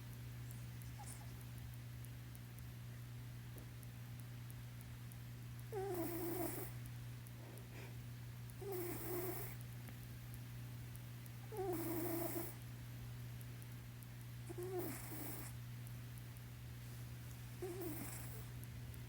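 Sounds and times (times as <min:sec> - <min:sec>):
steady low hum: 0:00.0 - 0:19.0
cat snore-purring: 0:05.7 - 0:06.8, 0:08.6 - 0:09.6, 0:11.5 - 0:12.6, 0:14.5 - 0:15.6, 0:17.6 - 0:18.5.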